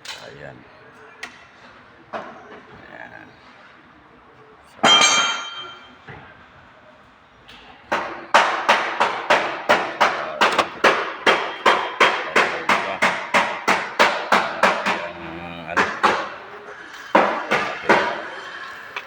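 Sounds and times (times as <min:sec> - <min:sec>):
hammer tapping on sheet metal: 0:07.9 - 0:18.3.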